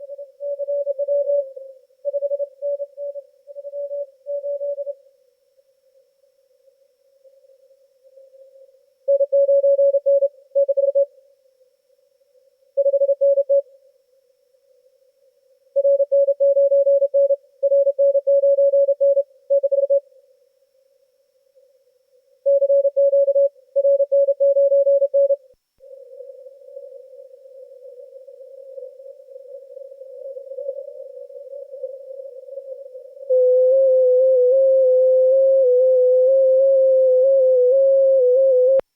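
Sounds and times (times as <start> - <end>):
morse code tone: 22.5 - 25.4.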